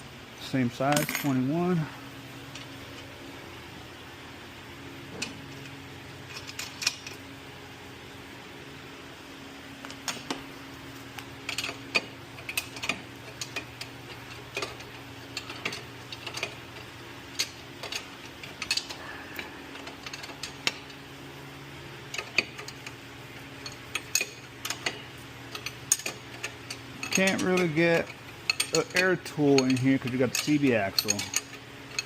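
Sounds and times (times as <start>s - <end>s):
steady low hum: 0.0s - 32.0s
wrench clicking on metal: 23.7s - 32.0s.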